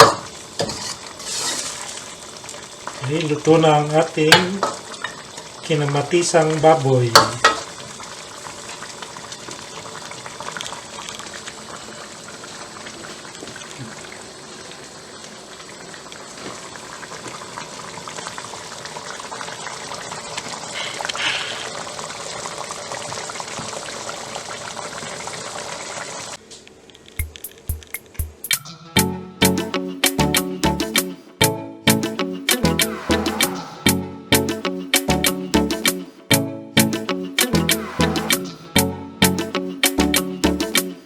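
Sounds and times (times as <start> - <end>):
stew bubbling in a pot: 0.0 - 26.5.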